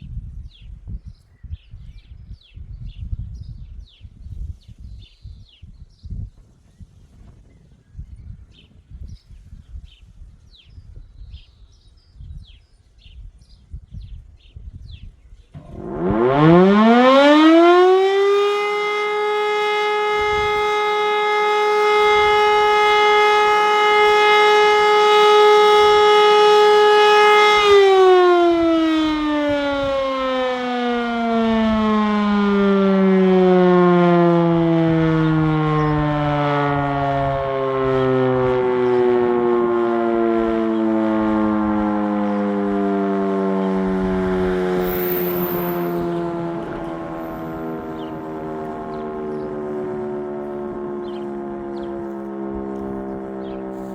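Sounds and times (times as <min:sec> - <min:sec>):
civil defence siren wailing: 0:15.6 - 0:53.9.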